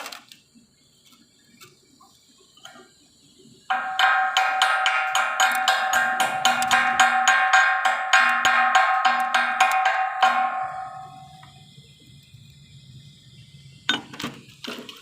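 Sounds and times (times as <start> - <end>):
sharp ringing strikes: 3.7 - 11.8.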